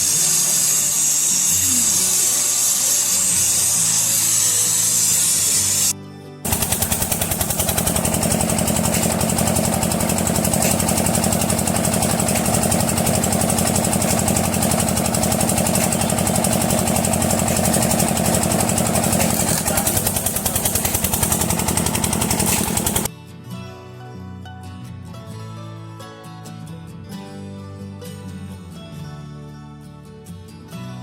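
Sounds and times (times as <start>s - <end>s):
tractor diesel engine chugging: 6.5s - 23.1s.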